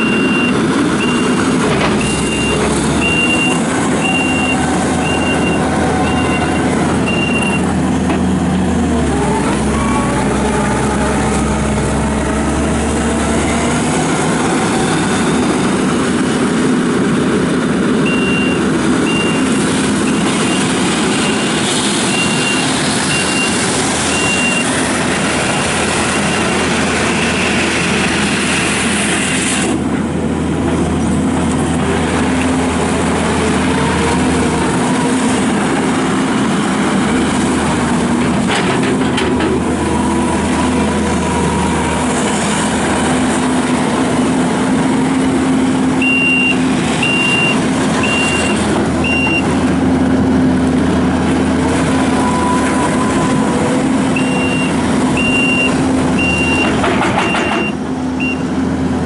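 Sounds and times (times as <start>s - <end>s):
diesel engine running: 0.0s - 59.0s
backup alarm beeping: 2.1s - 7.6s.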